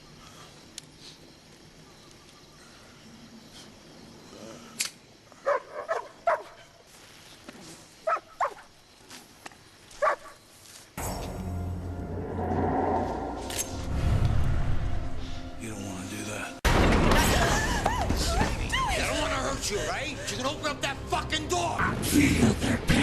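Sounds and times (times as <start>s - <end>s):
dog barking: 5.4s - 6.6s, 8.1s - 8.7s, 10.0s - 10.4s.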